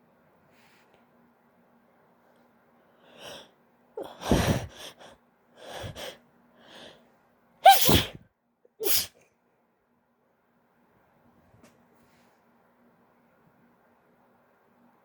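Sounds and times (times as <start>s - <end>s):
woman sneezing: 7.6s - 8.2s, 8.8s - 9.1s.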